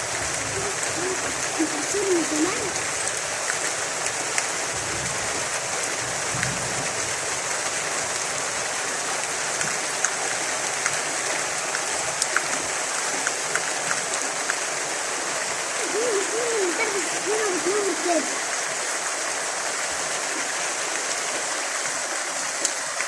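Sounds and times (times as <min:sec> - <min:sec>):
heavy rain hissing: 0:00.0 - 0:23.0
sharp drip ticks: 0:11.7 - 0:14.7.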